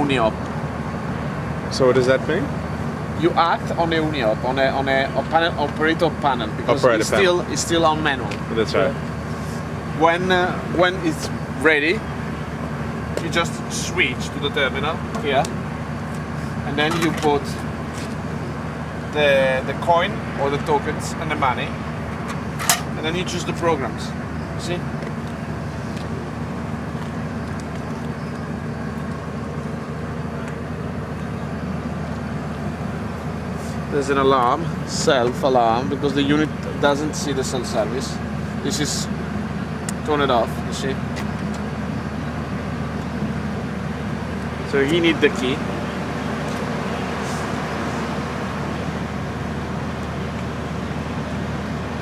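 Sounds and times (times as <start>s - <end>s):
car wash machinery humming: 0.0s - 52.0s.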